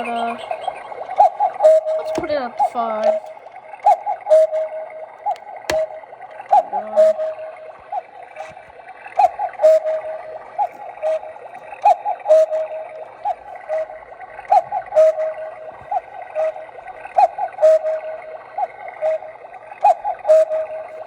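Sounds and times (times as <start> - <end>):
electronic cuckoo call: 0.0 - 21.0
clock mechanism clicks: 2.0 - 6.6.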